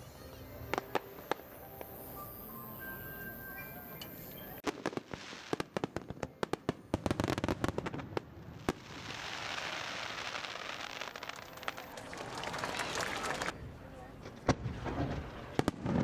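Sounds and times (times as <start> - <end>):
fireworks crackling: 0.3 - 2.7, 4.6 - 13.6, 14.5 - 16.0
fireworks bangs: 4.6 - 13.5, 14.4 - 16.0.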